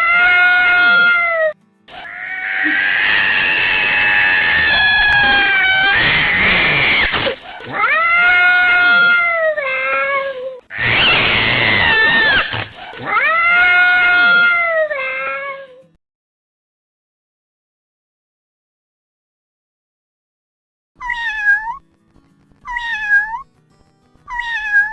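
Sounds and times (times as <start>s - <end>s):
cat meowing: 0.0s - 15.9s, 21.0s - 21.9s, 22.6s - 23.5s, 24.3s - 24.9s.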